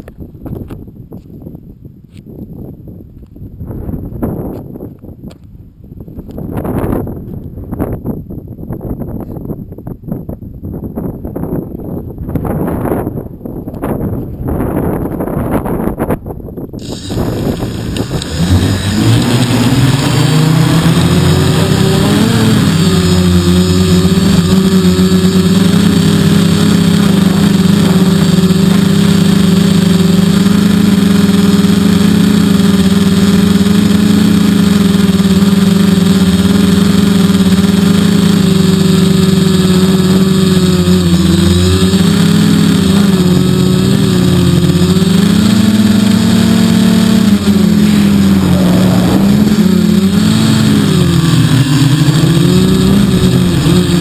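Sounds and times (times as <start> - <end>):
drone motors and propellers humming: 16.8 - 54.0.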